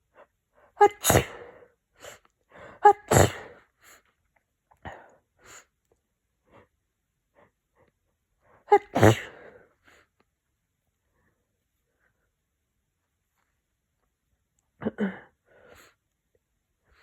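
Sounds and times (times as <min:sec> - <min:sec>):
person sneezing: 0:00.8 - 0:01.6, 0:02.8 - 0:03.6, 0:08.7 - 0:09.5
faint breathy sounds: 0:14.8 - 0:16.2.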